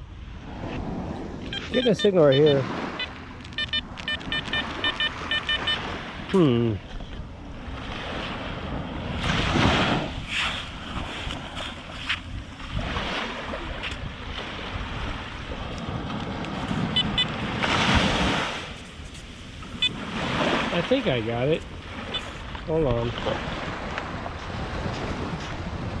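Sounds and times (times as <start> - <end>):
surf rushing: 0.4 - 6.7, 14.4 - 26.0
metal detector beep: 1.4 - 6.5, 16.6 - 17.6, 19.7 - 20.0, 22.1 - 22.4
wind buffeting microphone: 6.8 - 26.0.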